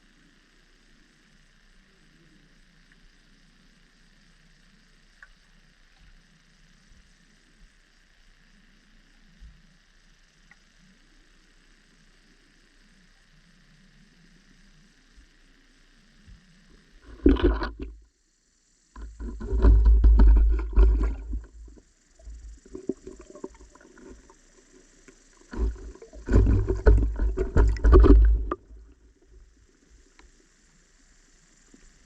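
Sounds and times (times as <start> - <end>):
muffled underwater rumbling and knocks: 16.3 - 18.0, 19.0 - 29.6.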